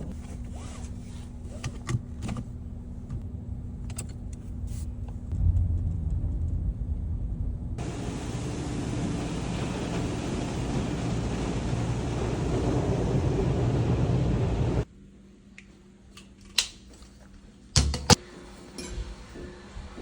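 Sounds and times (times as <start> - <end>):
rushing rumbling noise: 4.8 - 14.9.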